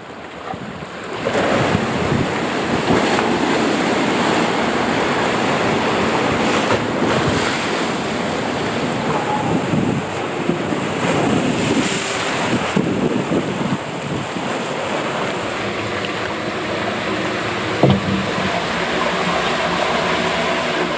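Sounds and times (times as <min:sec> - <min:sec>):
water rushing and splashing: 0:00.1 - 0:20.9
wind buffeting microphone: 0:00.5 - 0:07.5, 0:08.1 - 0:20.9
knock: 0:17.8 - 0:19.3.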